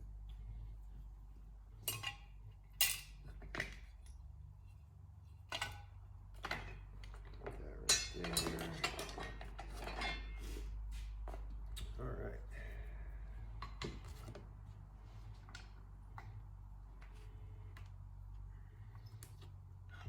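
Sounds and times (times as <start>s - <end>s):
metal hardware clinking: 1.8s - 4.2s.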